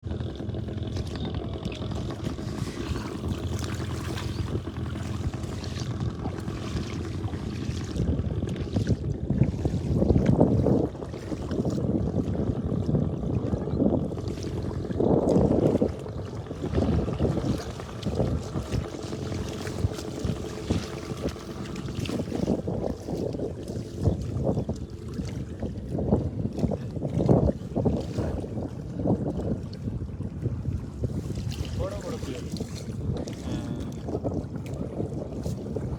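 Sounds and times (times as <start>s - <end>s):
wind buffeting microphone: 0.0s - 35.9s.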